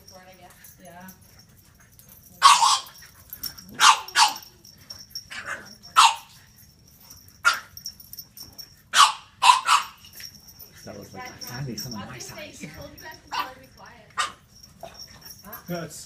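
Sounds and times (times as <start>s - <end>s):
puppy barking: 2.1s - 6.6s, 7.4s - 8.0s, 8.9s - 15.7s.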